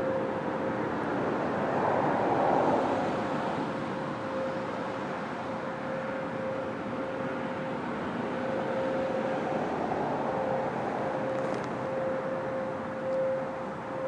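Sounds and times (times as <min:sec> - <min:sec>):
faint warning siren tone: 0:00.0 - 0:14.0
rushing haze noise: 0:00.0 - 0:14.0.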